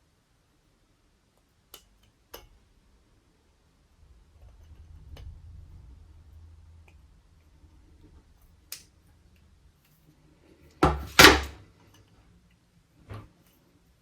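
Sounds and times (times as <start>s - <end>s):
metal knocks: 10.8s - 11.6s.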